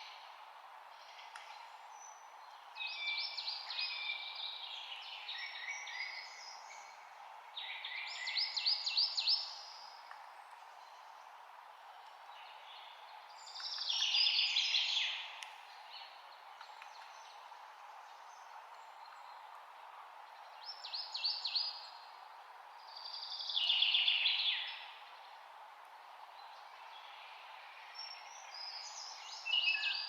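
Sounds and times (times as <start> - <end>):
steady background hiss: 0.0 - 30.0.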